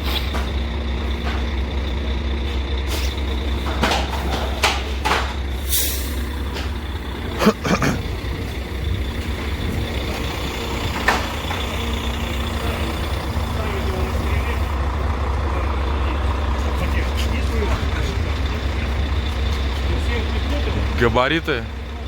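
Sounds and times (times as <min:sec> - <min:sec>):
truck diesel engine idling: 0:00.0 - 0:22.0
air hiss: 0:05.6 - 0:06.3.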